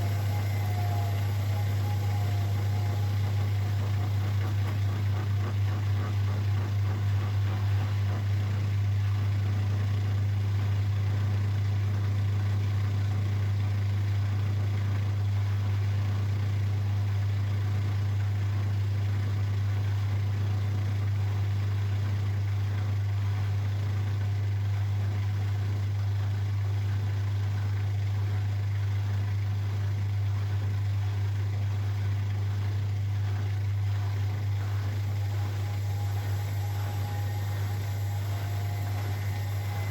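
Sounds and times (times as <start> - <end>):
washing machine spinning: 0.0 - 13.9, 30.2 - 39.9.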